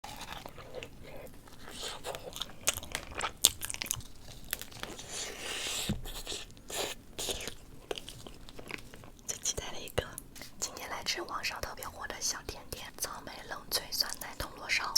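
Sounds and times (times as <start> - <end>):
crunchy biting and chewing: 0.0 - 9.4.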